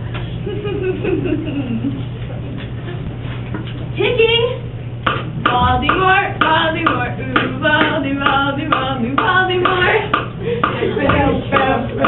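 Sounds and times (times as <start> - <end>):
young voices singing a chant: 5.6 - 12.0.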